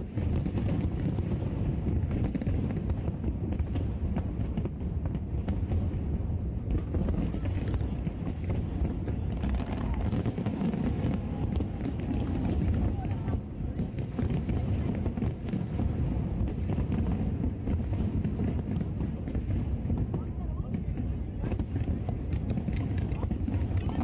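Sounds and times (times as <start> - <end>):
fireworks bursting and crackling: 0.0 - 24.0
crowd murmuring: 6.8 - 15.8, 19.9 - 24.0.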